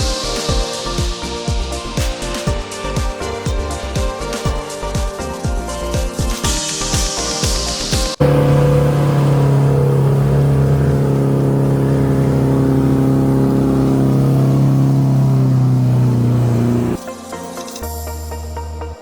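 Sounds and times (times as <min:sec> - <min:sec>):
engine at high revs: 0:08.2 - 0:17.0.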